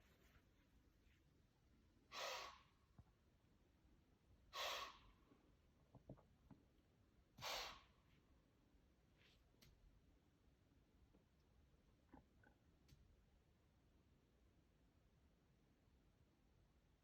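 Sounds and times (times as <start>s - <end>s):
deer wheezing: 2.1s - 2.7s, 4.5s - 5.2s, 7.4s - 7.9s.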